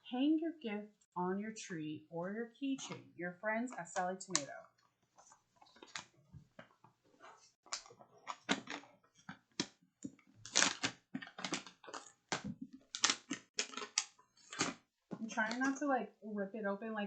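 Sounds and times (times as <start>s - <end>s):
cardboard being torn open: 10.4s - 11.7s.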